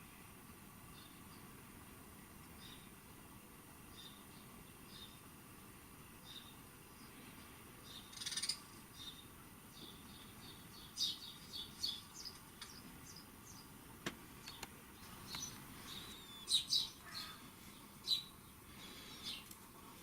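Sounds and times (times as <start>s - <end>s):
birds chirping and whistling: 7.8s - 13.7s, 14.5s - 17.4s, 18.0s - 19.5s.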